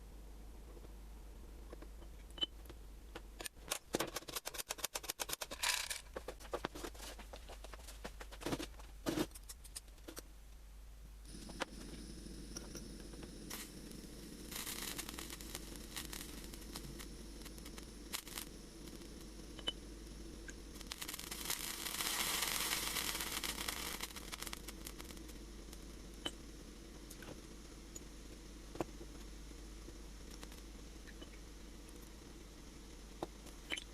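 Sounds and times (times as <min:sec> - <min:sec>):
steady low hum: 0:00.0 - 0:03.9, 0:05.6 - 0:33.9.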